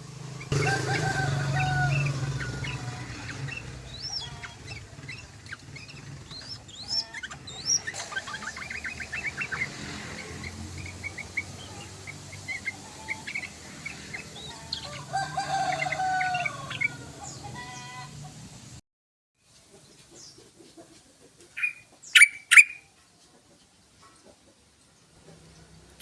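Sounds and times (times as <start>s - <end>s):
birds singing chirps and whistles: 0.3s - 17.9s, 21.5s - 22.9s.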